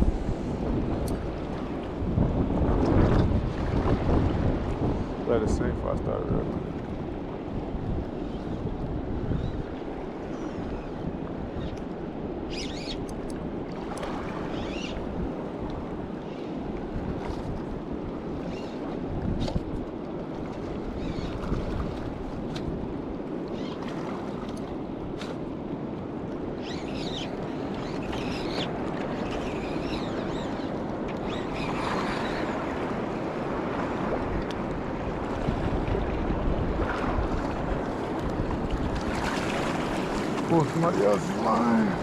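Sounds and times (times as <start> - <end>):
wind buffeting microphone: 0.0 - 42.0
river water rushing: 38.9 - 42.0.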